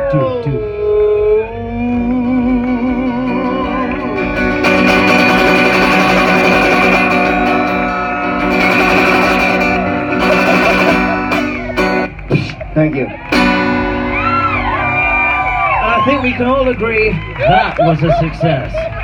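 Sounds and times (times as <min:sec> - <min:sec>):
person singing with vibrato: 0:00.0 - 0:11.4
acoustic guitar: 0:00.0 - 0:17.1.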